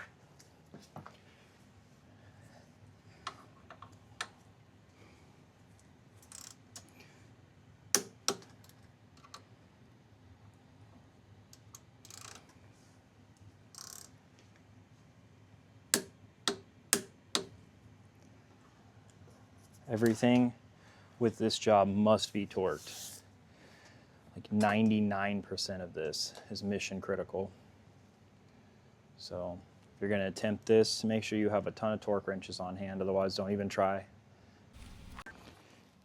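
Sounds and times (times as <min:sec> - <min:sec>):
torque wrench clicks: 0:06.2 - 0:06.9, 0:13.8 - 0:14.1
short scuffs: 0:34.8 - 0:35.4.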